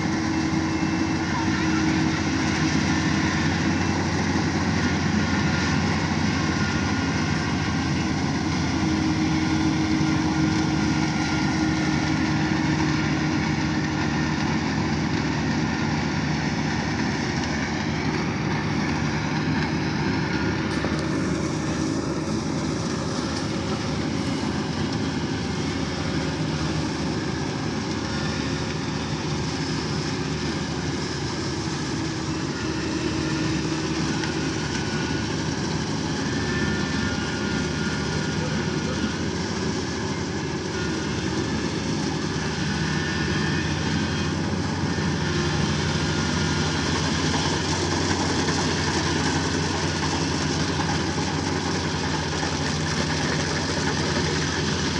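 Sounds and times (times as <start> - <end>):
diesel engine running steadily: 0.0 - 54.9
whir of working machinery: 0.0 - 54.9.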